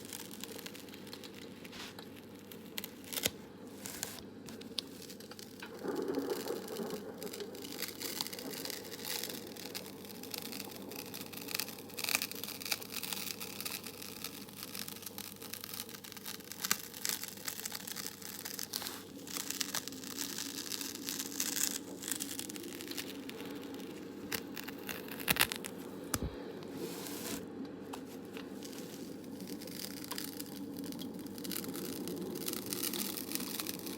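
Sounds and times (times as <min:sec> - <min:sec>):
crinkling and crackling: 0:00.0 - 0:33.9
steady background hiss: 0:00.0 - 0:33.9.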